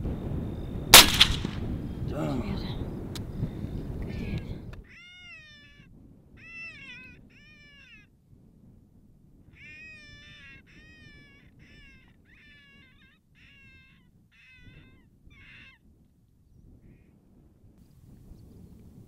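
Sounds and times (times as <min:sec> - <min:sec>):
electronic meow-like distress cries: 0:04.8 - 0:08.1, 0:09.6 - 0:15.8.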